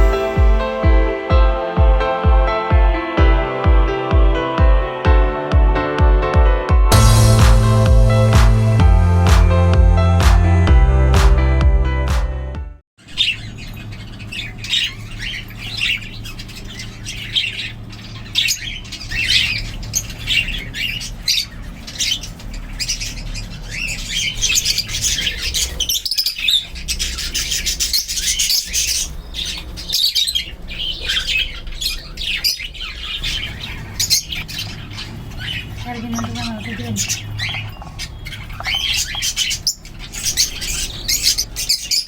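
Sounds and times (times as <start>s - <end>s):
bird chicks calling: 13.0s - 42.0s.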